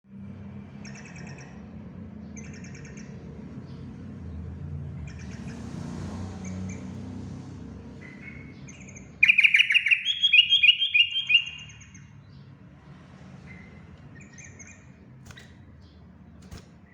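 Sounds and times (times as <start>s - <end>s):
bird singing bubbling notes: 9.2s - 11.8s.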